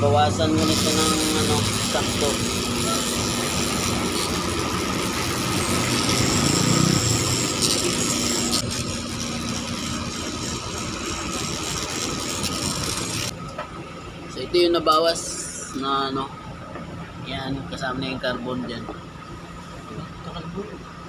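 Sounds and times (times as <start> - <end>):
rotary grinding tool grinding metal: 0.4 - 13.3.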